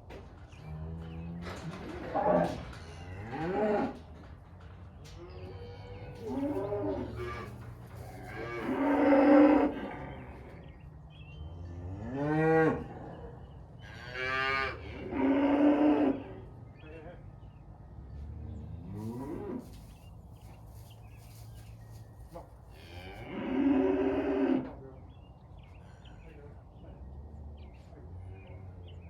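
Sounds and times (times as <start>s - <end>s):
cattle mooing: 5.4s - 10.5s, 13.8s - 16.3s, 22.8s - 24.7s.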